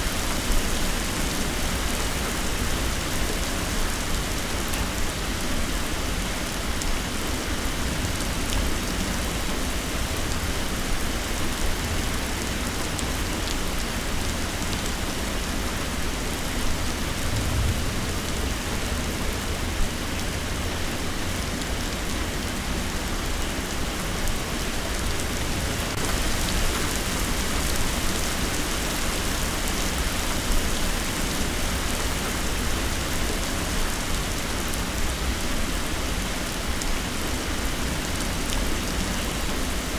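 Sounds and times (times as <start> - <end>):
heavy rain pouring: 0.0 - 39.9
low rumble: 16.7 - 20.3.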